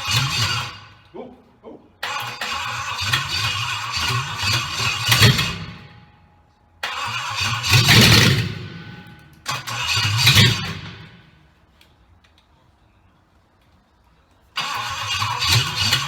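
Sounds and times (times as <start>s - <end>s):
engine cranking over: 0.0s - 1.0s, 2.0s - 6.0s, 6.8s - 11.4s, 14.5s - 16.0s.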